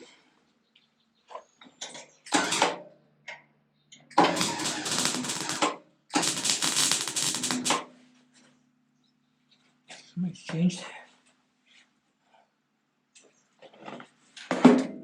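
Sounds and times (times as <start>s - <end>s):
welder crackling: 4.2s - 7.9s.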